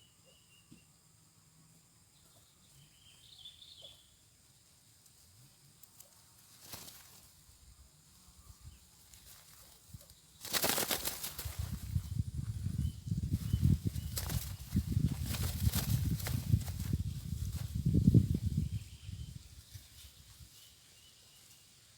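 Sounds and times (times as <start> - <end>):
faint bird chirp: 0.0 - 21.9
dove wings flapping: 6.5 - 7.2, 10.4 - 12.0, 13.3 - 18.2.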